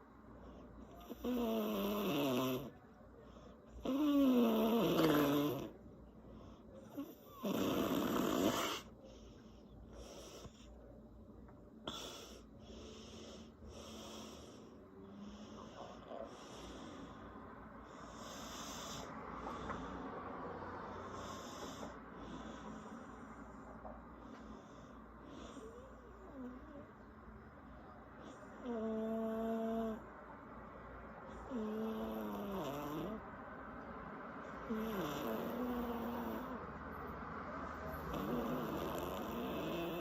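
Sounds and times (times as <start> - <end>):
woman snoring: 1.0 - 2.8, 3.8 - 5.8, 6.9 - 8.9, 25.5 - 26.8, 28.6 - 30.0, 31.4 - 33.2, 34.6 - 36.6, 37.9 - 40.0
rough breaths: 11.8 - 26.3.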